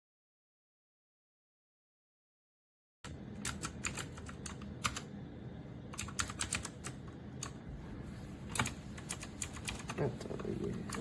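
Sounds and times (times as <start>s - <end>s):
mechanical keyboard typing: 3.1s - 5.1s, 5.9s - 7.6s, 8.5s - 11.0s.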